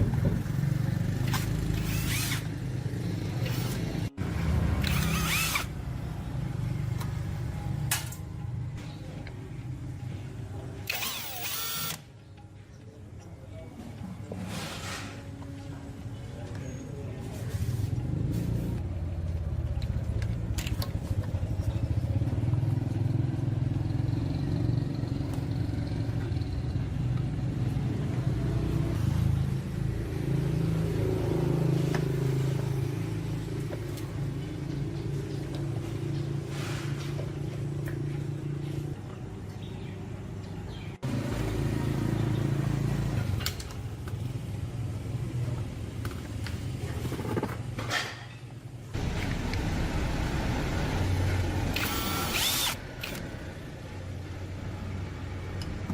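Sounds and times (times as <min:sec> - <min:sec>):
machine humming: 0:51.6 - 0:53.2.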